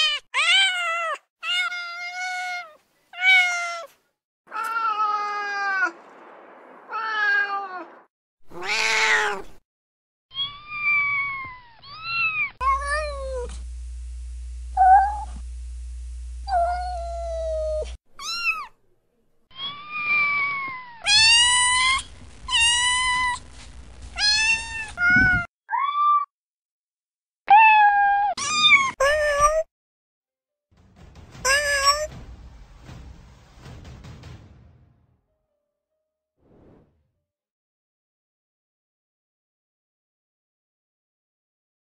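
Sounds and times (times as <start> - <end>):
cats meowing: 8.5 - 9.6, 19.5 - 23.4, 24.2 - 26.3.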